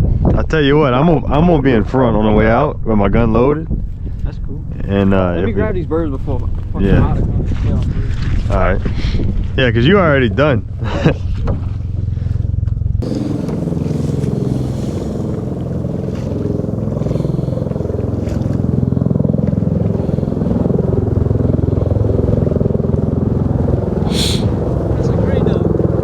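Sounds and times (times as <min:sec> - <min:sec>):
outboard boat motor running: 0:10.0 - 0:26.0.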